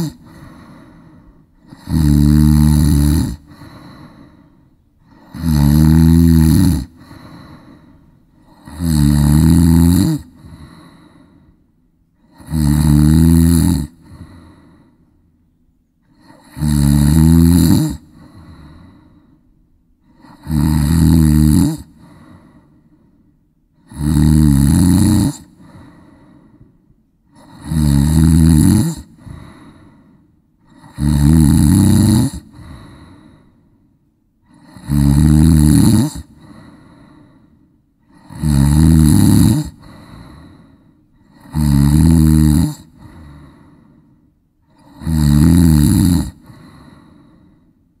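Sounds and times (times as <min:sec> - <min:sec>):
faint breath: 0:00.0 - 0:02.0, 0:03.4 - 0:05.4, 0:06.9 - 0:08.7, 0:10.2 - 0:12.5, 0:14.0 - 0:16.5, 0:18.0 - 0:20.4, 0:21.9 - 0:23.9, 0:25.4 - 0:27.6, 0:29.0 - 0:30.9, 0:32.4 - 0:34.8, 0:36.2 - 0:38.4, 0:39.7 - 0:41.4, 0:42.8 - 0:45.0, 0:46.3 - 0:48.0
person snoring: 0:00.0 - 0:11.6, 0:12.2 - 0:15.1, 0:16.0 - 0:19.4, 0:20.0 - 0:23.1, 0:23.8 - 0:26.7, 0:27.3 - 0:33.8, 0:34.4 - 0:47.7.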